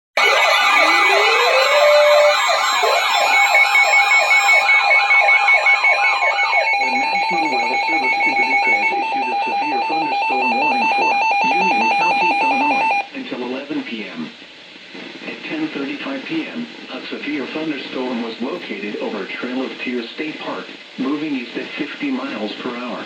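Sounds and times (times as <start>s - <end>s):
electronic siren yelping: 0.2s - 13.1s
pulsing alarm tone: 0.2s - 13.1s.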